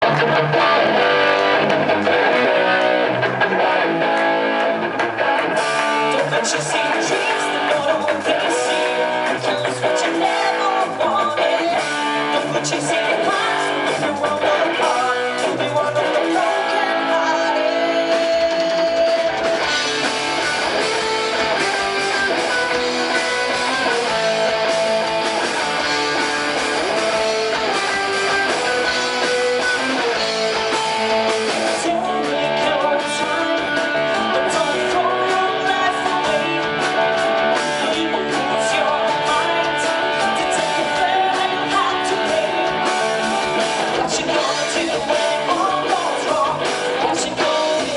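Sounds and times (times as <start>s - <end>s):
live band guitar song: 0.0s - 47.9s
deep bass: 10.9s - 47.9s.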